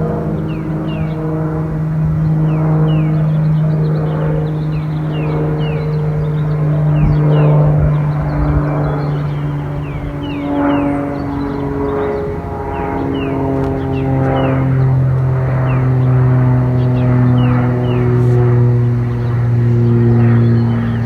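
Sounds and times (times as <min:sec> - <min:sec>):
engine drone: 0:00.0 - 0:21.0.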